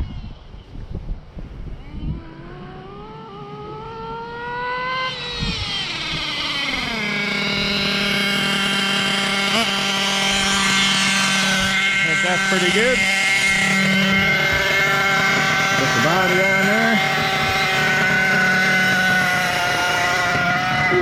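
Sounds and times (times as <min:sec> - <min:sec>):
small nitro engine running: 0:01.6 - 0:21.0
engine knocks: 0:10.4 - 0:20.8.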